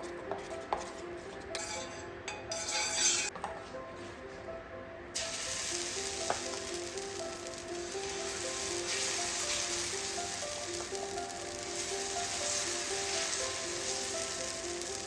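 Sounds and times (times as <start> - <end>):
soft background music: 0.0 - 15.0
food sizzling in a pan: 5.2 - 15.0.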